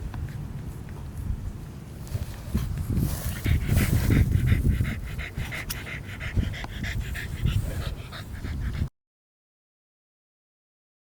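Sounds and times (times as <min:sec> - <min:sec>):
dog panting: 0:03.3 - 0:08.9.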